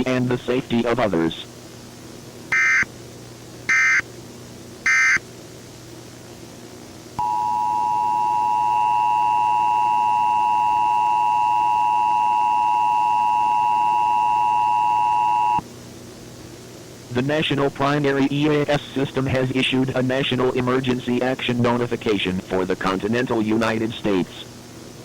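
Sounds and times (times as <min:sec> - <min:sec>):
two-tone attention signal: 0:02.5 - 0:02.8, 0:04.9 - 0:05.2
buzzy digital chirps: 0:02.5 - 0:02.9, 0:03.7 - 0:04.0, 0:04.9 - 0:05.2.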